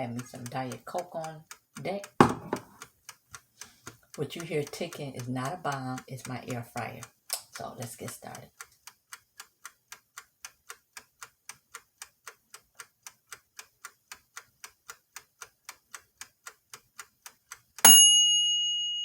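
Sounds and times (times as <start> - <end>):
timer ticking: 0.0 - 17.8
timer bell ding: 17.9 - 19.0.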